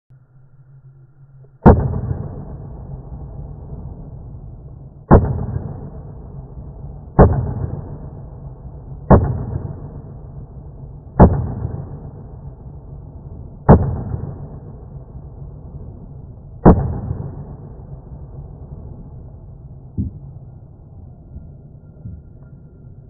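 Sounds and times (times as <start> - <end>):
pistol shots: 5.1 - 6.2, 7.2 - 8.2, 9.0 - 10.3, 11.2 - 12.4, 13.6 - 14.8, 16.6 - 17.6.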